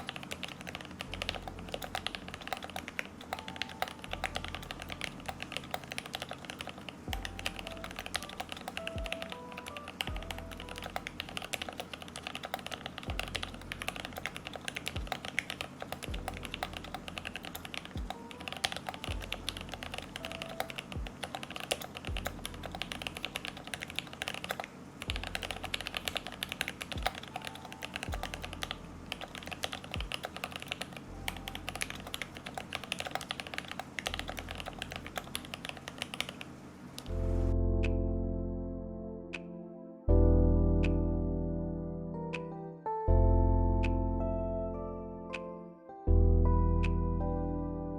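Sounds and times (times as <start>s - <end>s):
fast mechanical keyboard typing: 0.0s - 37.1s
background music with low beat: 1.2s - 5.9s, 7.1s - 11.4s, 13.1s - 14.4s, 15.0s - 15.2s, 16.0s - 21.3s, 22.1s - 23.5s, 25.1s - 30.3s, 37.1s - 47.9s.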